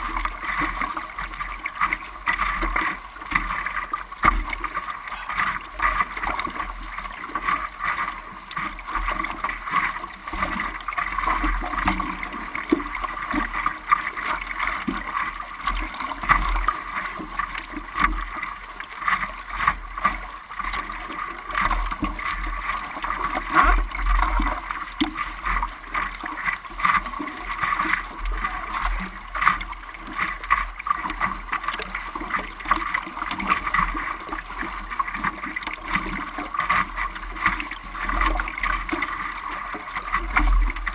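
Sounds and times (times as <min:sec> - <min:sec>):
sea water splashing: 0:00.0 - 0:40.9.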